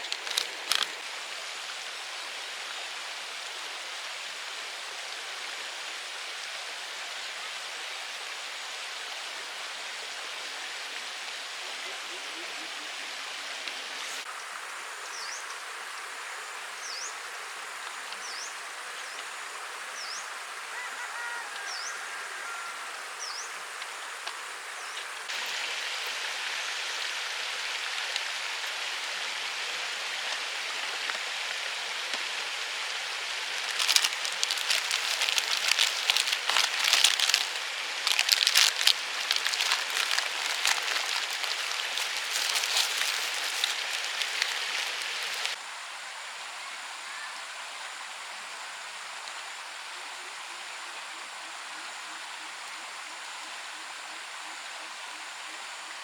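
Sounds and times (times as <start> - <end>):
crackling taps of raindrops: 0.0 - 1.0, 33.5 - 45.6
steady rain: 0.0 - 45.6.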